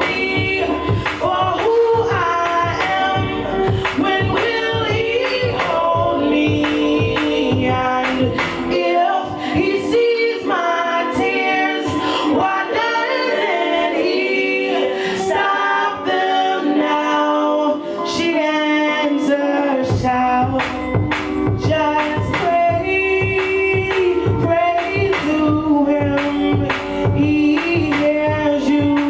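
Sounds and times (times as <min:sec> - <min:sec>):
drums and bass: 0:00.0 - 0:09.9, 0:19.9 - 0:29.0
vocal harmonies: 0:00.0 - 0:29.0
woman singing lead: 0:00.0 - 0:29.0.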